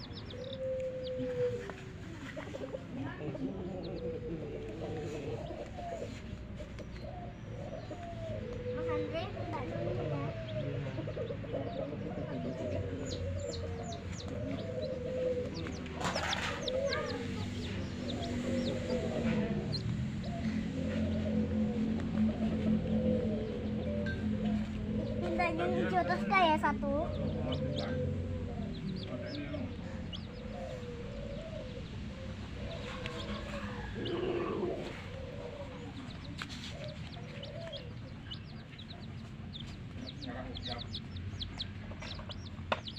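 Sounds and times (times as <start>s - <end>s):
chicks peeping: 0.0s - 42.9s
hen clucking: 0.0s - 42.9s.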